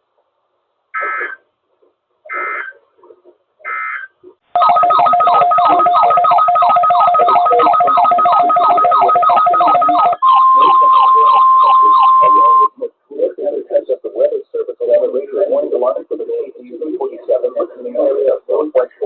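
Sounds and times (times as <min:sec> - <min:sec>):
digital data bursts: 0:04.6 - 0:12.7
warbling electronic alert tone: 0:04.6 - 0:12.7.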